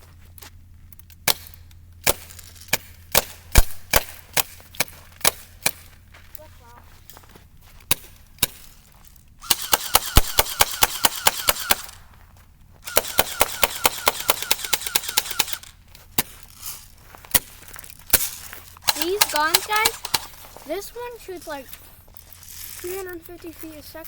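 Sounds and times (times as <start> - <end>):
airsoft rifle firing: 1.2 - 5.9, 9.4 - 12.1, 12.8 - 16.4, 17.3 - 20.5.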